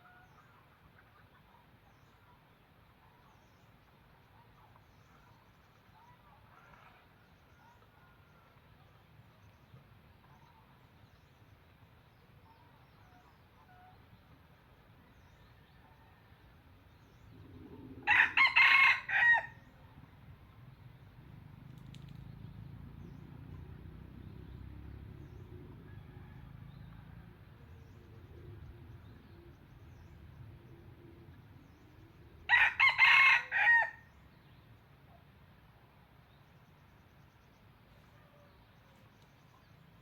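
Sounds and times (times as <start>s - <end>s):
rooster crowing: 18.0s - 19.6s, 32.5s - 34.0s.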